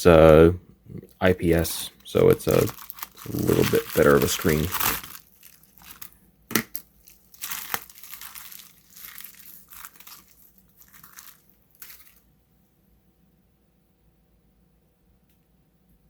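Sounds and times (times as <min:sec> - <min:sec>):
packaging crinkling and rustling: 0:01.4 - 0:12.3.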